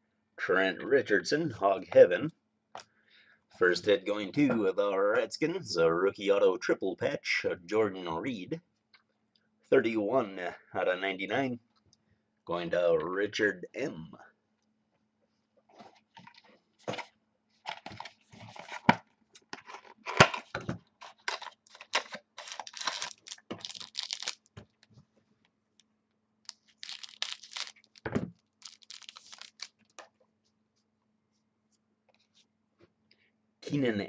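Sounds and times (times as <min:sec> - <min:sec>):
card pack wrapper tearing and crinkling: 0:21.2 - 0:24.6, 0:26.5 - 0:30.0.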